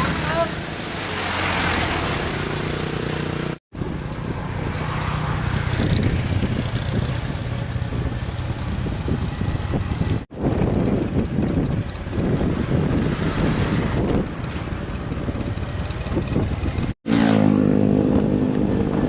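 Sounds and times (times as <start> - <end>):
vehicle engine running: 5.4 - 19.0.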